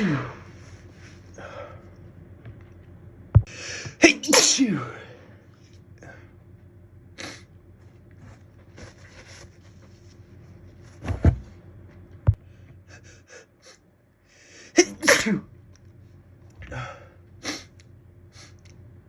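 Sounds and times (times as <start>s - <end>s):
person gasping breaths: 1.2s - 1.9s, 3.4s - 4.0s, 16.6s - 17.7s
person sneezing: 3.6s - 5.0s, 14.7s - 15.5s.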